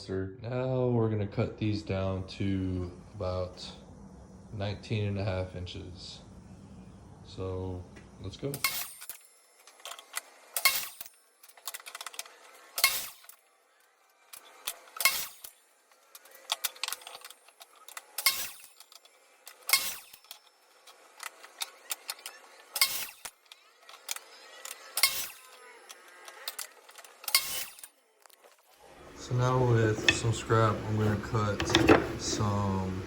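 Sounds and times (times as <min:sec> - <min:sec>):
sharp knocks and clinks: 0:08.6 - 0:12.1, 0:12.8 - 0:13.4
faint handling noise: 0:29.7 - 0:32.5.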